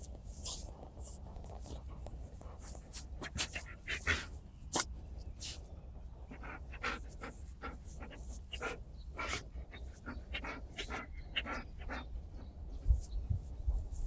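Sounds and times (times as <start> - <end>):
dog panting: 1.2 - 4.9, 5.5 - 12.9.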